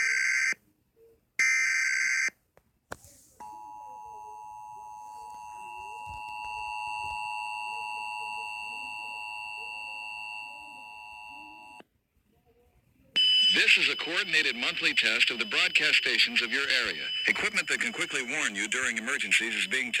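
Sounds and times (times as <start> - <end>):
digital data burst: 13.6 - 20.0.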